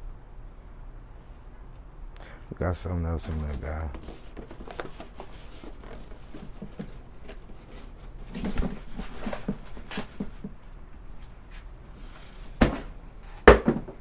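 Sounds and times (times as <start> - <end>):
packaging rustling and clicking: 3.3 - 10.5.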